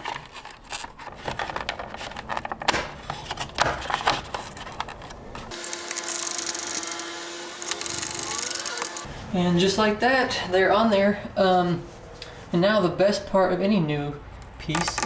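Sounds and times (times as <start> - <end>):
plastic clicks and scrapes: 0.0 - 9.1.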